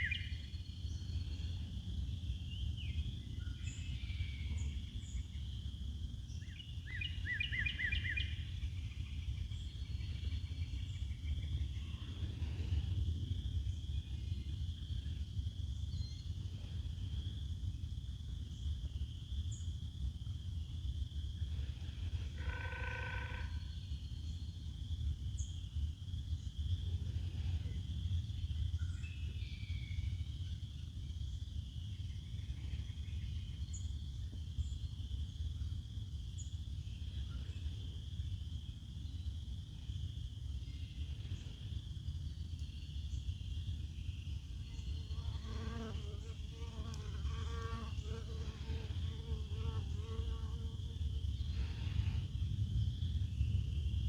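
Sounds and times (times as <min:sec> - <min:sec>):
wind rumble on microphone: 0:00.0 - 0:45.2, 0:48.5 - 0:54.0
insects buzzing: 0:39.8 - 0:53.4.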